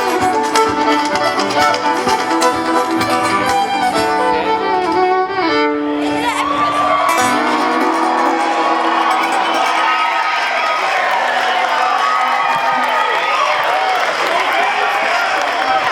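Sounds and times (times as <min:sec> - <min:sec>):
folk string band playing: 0:00.0 - 0:11.2
fiddle melody: 0:00.0 - 0:11.4
crowd cheering: 0:00.0 - 0:15.9.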